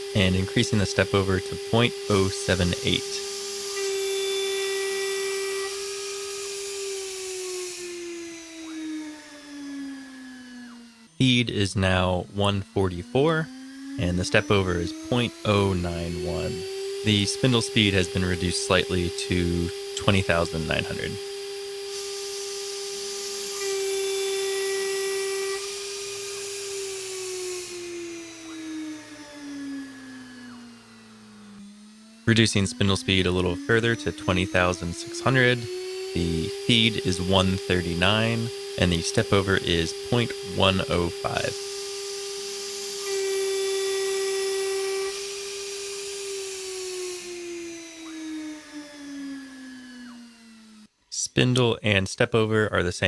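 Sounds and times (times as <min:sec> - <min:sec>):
end mill cutting aluminum: 0:00.0 - 0:50.9
router spindle whining: 0:00.0 - 0:51.8.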